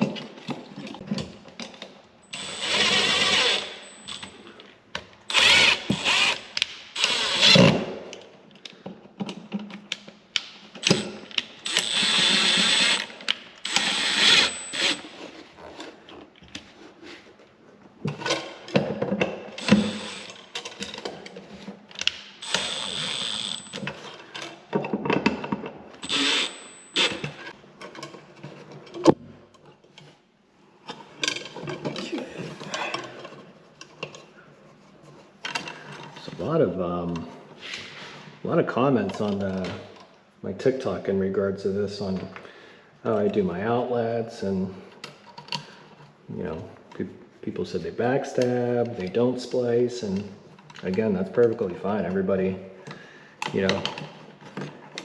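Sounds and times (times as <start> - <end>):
power drill running: 2.3 - 4.2, 5.3 - 7.7, 10.8 - 15.0, 19.6 - 20.4, 22.4 - 23.8, 26.0 - 27.4.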